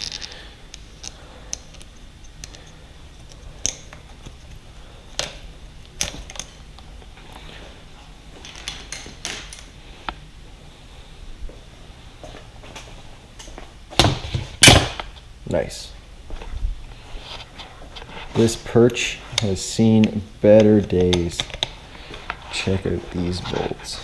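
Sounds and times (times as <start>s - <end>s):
metal tools clicking and clinking: 6.0s - 6.6s.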